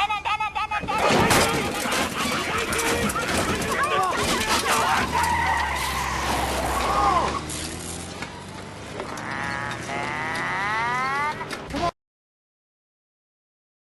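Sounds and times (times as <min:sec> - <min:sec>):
tyres squealing: 0:00.0 - 0:11.9
car engine running: 0:01.6 - 0:11.6
engine revving whine: 0:05.0 - 0:11.7.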